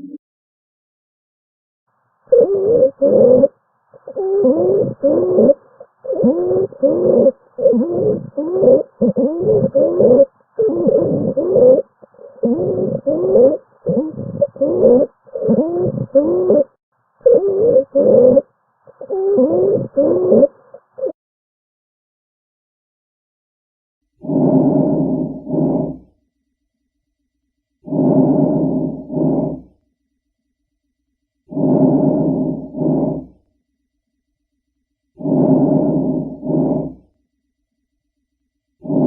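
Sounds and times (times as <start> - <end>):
wheezing breath sounds: 2.3 - 18.4, 19.0 - 21.1, 24.2 - 26.2, 27.8 - 29.8, 31.5 - 33.4, 35.2 - 37.2.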